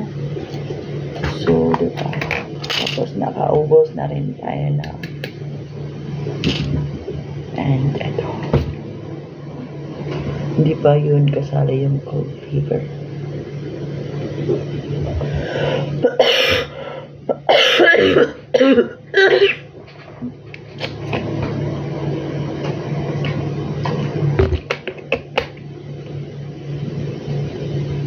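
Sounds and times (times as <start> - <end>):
low steady hum: 0.0 - 28.0
person coughing hard: 16.0 - 16.7, 17.3 - 19.6.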